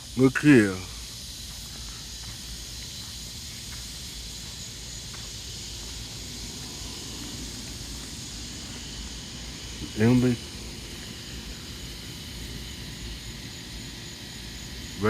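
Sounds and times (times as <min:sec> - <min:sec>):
steady outdoor hiss: 0:00.0 - 0:15.0
low rumble: 0:05.4 - 0:12.5.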